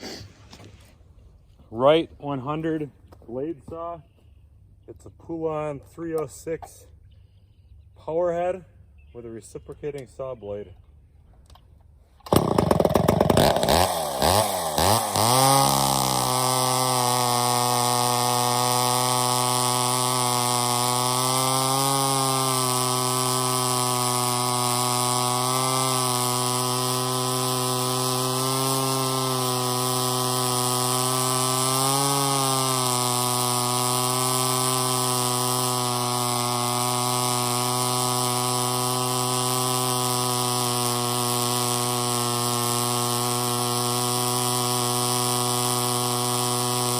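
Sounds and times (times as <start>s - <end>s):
chainsaw engine running: 12.2s - 46.9s.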